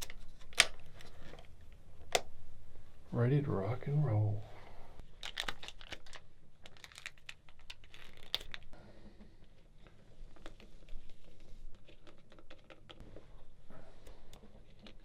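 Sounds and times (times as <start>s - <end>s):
rustling: 4.7s - 15.0s.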